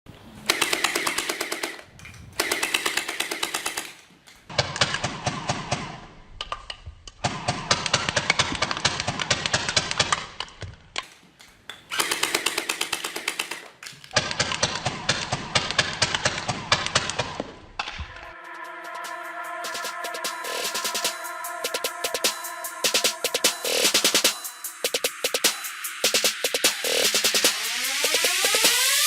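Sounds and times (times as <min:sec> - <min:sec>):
toy guns firing automatic bursts: 0:00.5 - 0:06.1, 0:07.2 - 0:10.5, 0:11.9 - 0:17.4.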